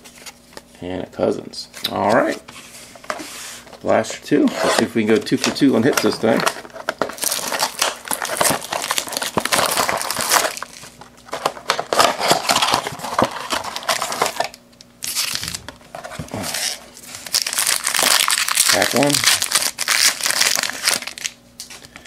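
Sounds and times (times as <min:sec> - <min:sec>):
plastic wrapping crinkling and tearing: 0:05.4 - 0:21.4.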